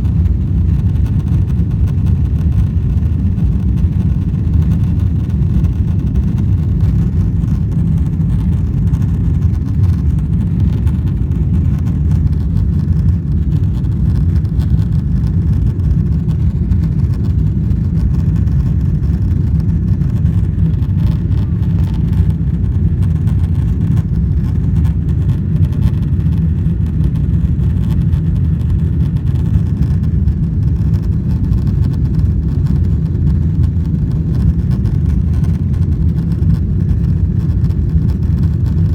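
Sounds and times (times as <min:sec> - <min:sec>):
airliner cabin rumble: 0:00.0 - 0:38.9.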